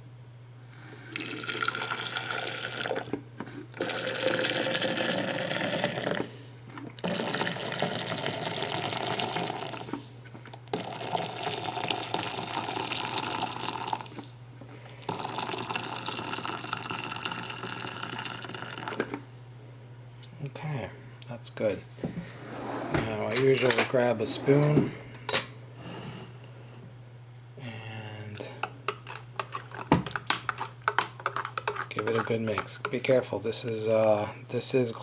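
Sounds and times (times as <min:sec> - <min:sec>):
water pouring into glass: 0:01.1 - 0:03.1, 0:03.8 - 0:06.3, 0:07.0 - 0:09.9, 0:10.8 - 0:14.2, 0:15.1 - 0:19.4.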